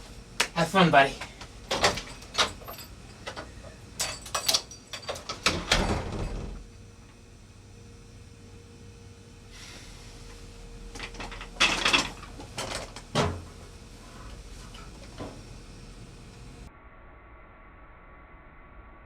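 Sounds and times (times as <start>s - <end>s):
objects knocking and clattering: 1.2s - 6.6s, 10.9s - 13.6s.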